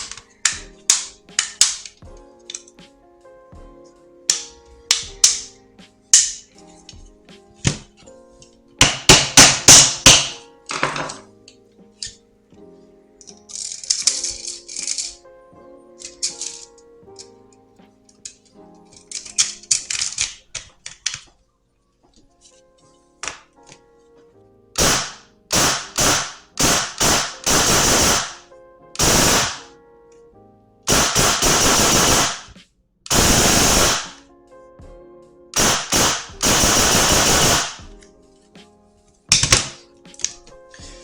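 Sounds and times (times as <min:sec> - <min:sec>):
airsoft gun firing bursts: 0:08.8 - 0:10.4, 0:24.8 - 0:28.4, 0:29.0 - 0:29.7, 0:30.9 - 0:34.2, 0:35.6 - 0:37.8.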